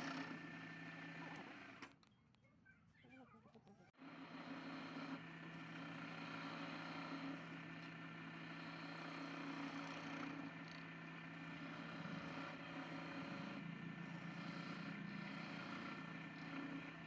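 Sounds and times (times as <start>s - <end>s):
lathe motor humming: 4.2s - 17.0s.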